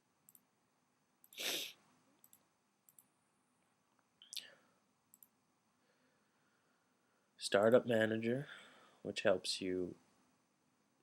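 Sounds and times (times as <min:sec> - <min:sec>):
breath into microphone: 0:01.4 - 0:01.8, 0:08.5 - 0:09.0
computer mouse clicking: 0:02.2 - 0:03.1, 0:05.1 - 0:05.3.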